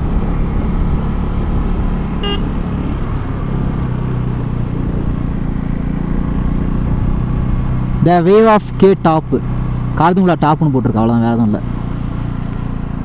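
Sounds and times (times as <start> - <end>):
motorcycle engine running: 0.0 - 13.0
horn toot: 2.2 - 2.6.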